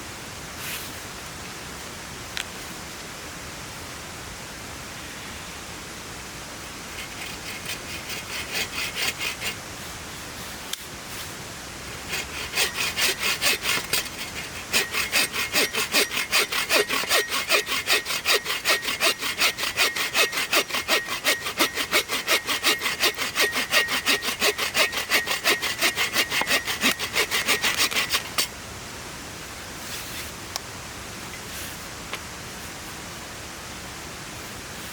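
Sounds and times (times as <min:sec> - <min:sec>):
hand saw cutting wood: 0:06.9 - 0:09.6, 0:11.9 - 0:28.5.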